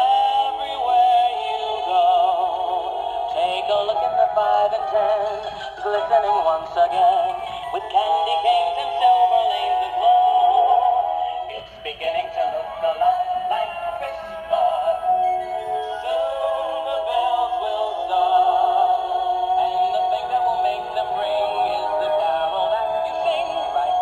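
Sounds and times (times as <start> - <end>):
toy speaker playing sung melody: 3.3 - 24.0.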